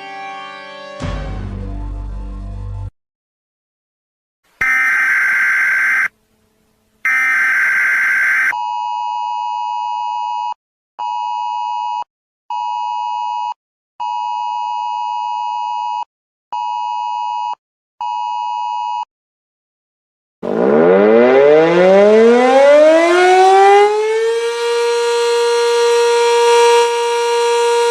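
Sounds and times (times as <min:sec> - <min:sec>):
harsh digital buzzing bursts: 0:04.6 - 0:06.1, 0:07.1 - 0:08.5
two-tone attention signal beeps: 0:04.6 - 0:06.1.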